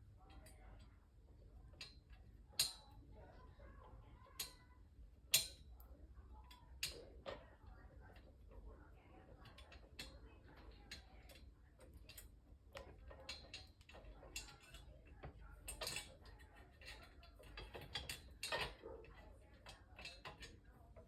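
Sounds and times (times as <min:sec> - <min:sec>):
metal poles clicking and tapping: 0:01.7 - 0:03.1, 0:05.3 - 0:08.7, 0:09.3 - 0:21.0.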